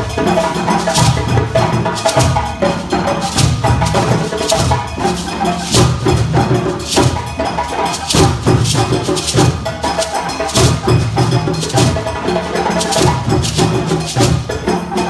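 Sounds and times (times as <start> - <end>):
djembe hand drums: 0.0 - 15.0.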